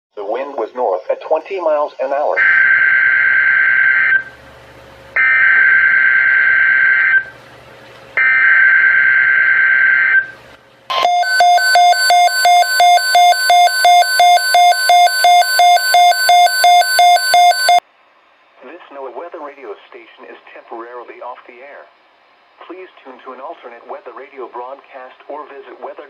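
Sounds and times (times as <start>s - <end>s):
pulsing electronic alert beeps: 10.9s - 17.8s.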